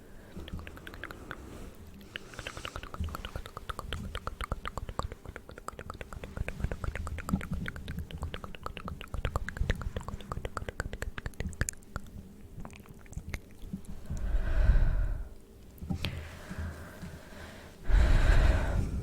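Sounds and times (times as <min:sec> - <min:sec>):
wet mouth clicks and smacks: 0:00.3 - 0:14.3
breathy exhale into microphone: 0:14.1 - 0:15.4, 0:16.1 - 0:19.0.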